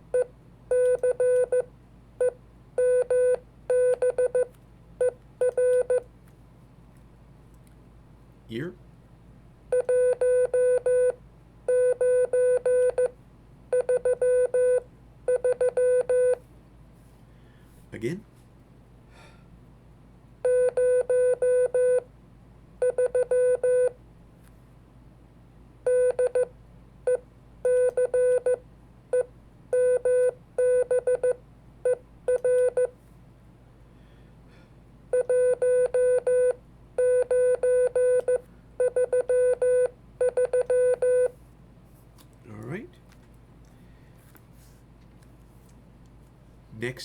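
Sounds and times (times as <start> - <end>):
morse code sidetone beeping: 35.2 - 41.3.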